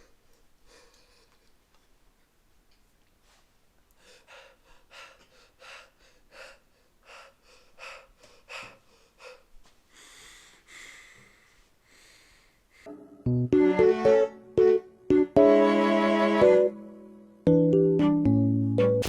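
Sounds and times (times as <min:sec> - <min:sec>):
person gasping for breath: 0:04.0 - 0:12.9.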